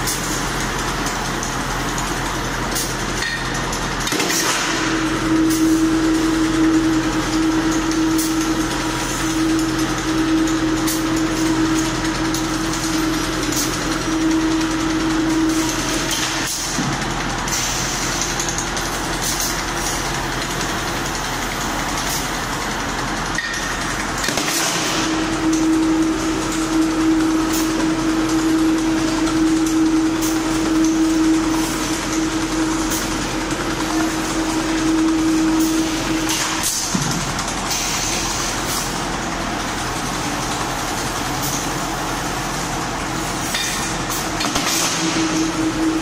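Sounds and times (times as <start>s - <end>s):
heavy machinery running: 0.0s - 46.0s.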